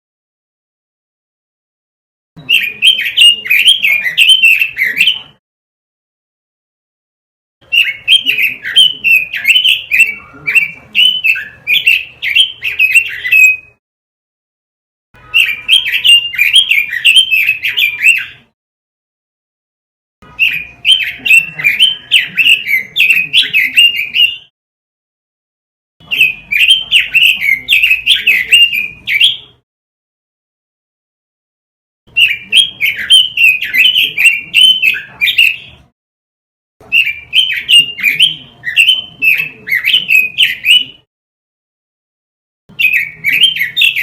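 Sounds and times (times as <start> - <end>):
bird warbling song: 2.4 - 5.4, 7.6 - 13.8, 15.2 - 18.5, 20.2 - 24.5, 26.0 - 29.6, 32.1 - 35.9, 36.8 - 41.1, 42.7 - 44.0.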